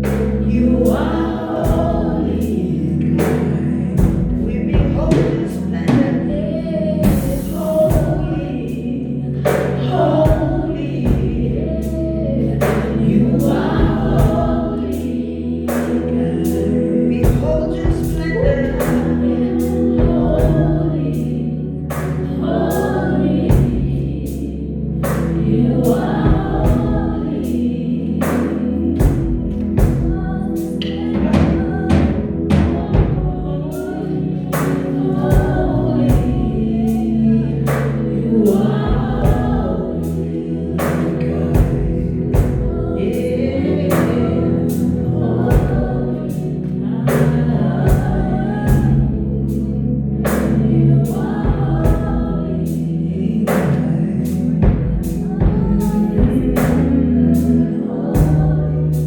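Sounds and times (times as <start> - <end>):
steady drum beat: 0.0 - 8.8, 9.4 - 12.0, 12.6 - 21.3, 21.9 - 24.4, 25.0 - 49.6, 50.2 - 52.8, 53.5 - 59.0
bass and keyboard notes: 0.0 - 59.0
choir singing: 0.0 - 59.0.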